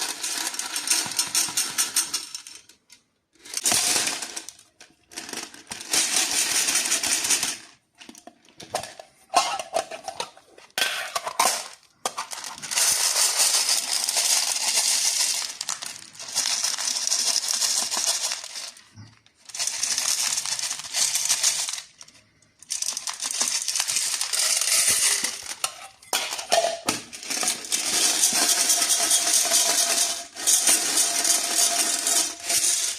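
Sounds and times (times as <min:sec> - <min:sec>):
hard candies rattling in packaging: 0:00.0 - 0:02.7, 0:03.4 - 0:09.9, 0:11.2 - 0:32.9.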